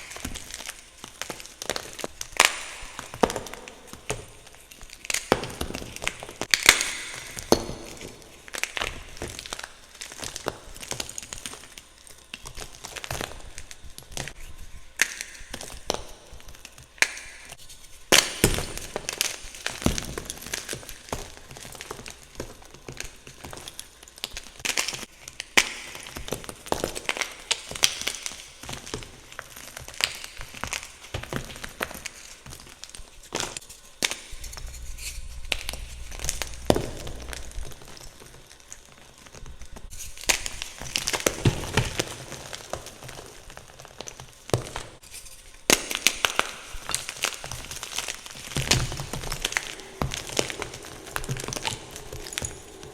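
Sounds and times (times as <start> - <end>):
low rumble: 34.3 - 39.9, 49.0 - 52.9.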